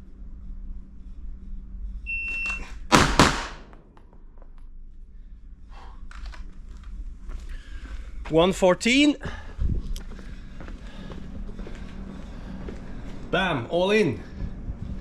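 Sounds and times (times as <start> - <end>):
pistol shots: 2.9 - 3.8.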